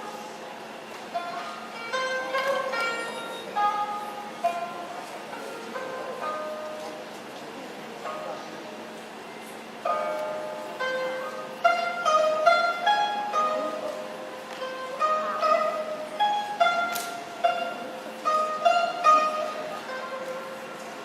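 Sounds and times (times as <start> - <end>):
plucked string instrument melody: 0.0 - 21.0.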